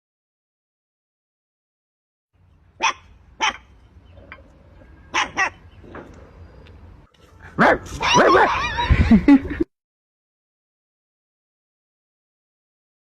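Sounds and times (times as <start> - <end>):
dog barking: 2.8 - 3.7, 5.1 - 5.6, 7.4 - 8.7.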